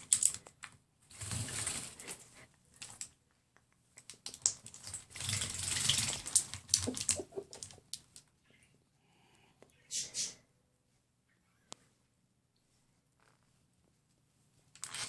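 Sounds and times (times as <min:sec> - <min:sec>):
parrot splashing water: 0:04.2 - 0:07.8.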